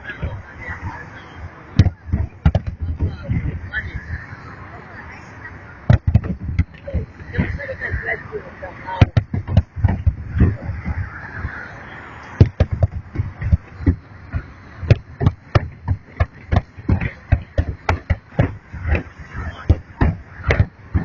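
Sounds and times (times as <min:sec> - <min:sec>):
fireworks bangs: 0:12.4 - 0:21.0.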